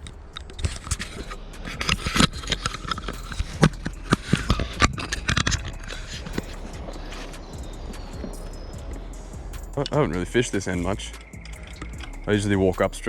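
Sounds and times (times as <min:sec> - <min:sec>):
sharp clicks and knocks: 0:00.0 - 0:09.0.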